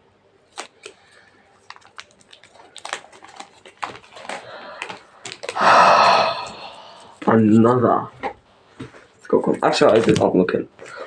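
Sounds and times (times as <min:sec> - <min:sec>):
packaging crinkling: 0:00.5 - 0:06.3.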